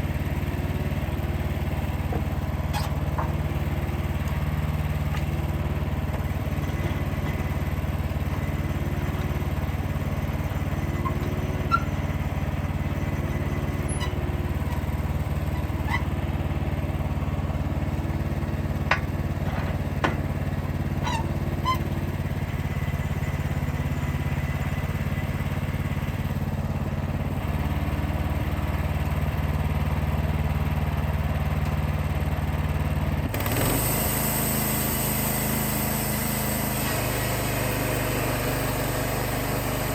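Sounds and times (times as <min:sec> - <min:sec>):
sawmill engine running: 0:00.0 - 0:39.9
mill squeaks and clicks: 0:02.7 - 0:03.4, 0:10.3 - 0:16.3, 0:20.9 - 0:22.2.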